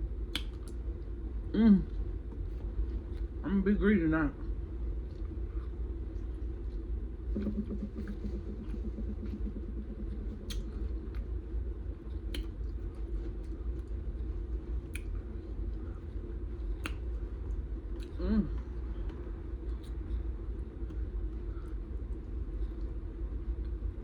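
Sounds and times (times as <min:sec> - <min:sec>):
low background hum: 0:00.0 - 0:24.0
wet mouth clicks and smacks: 0:00.2 - 0:00.8, 0:08.6 - 0:11.3, 0:12.0 - 0:14.0, 0:14.7 - 0:15.8, 0:16.6 - 0:18.2, 0:19.7 - 0:20.1
person chewing food: 0:00.2 - 0:03.4, 0:04.7 - 0:23.8.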